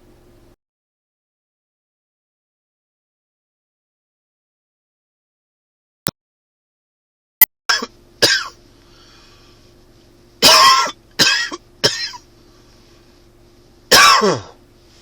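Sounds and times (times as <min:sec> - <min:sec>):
man's dry cough: 0:07.7 - 0:08.6, 0:10.4 - 0:12.2, 0:13.9 - 0:14.6.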